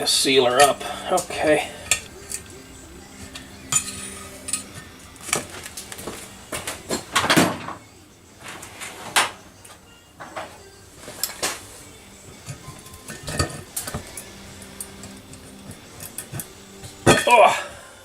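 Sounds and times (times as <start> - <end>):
metal tool scraping and clicking: 0.6 - 2.5, 3.3 - 6.1, 12.4 - 16.6.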